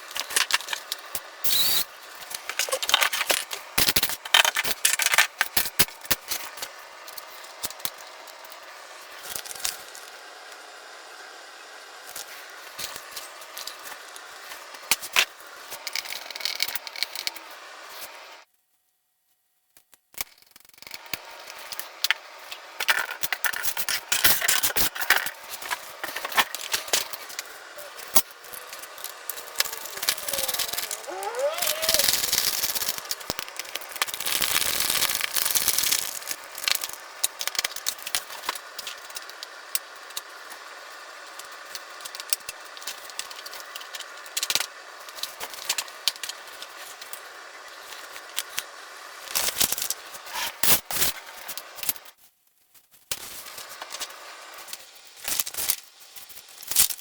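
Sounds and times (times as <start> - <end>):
foam and plastic parts clicking: 0.1 - 6.7, 22.8 - 40.3
brief squeak: 1.5 - 1.9.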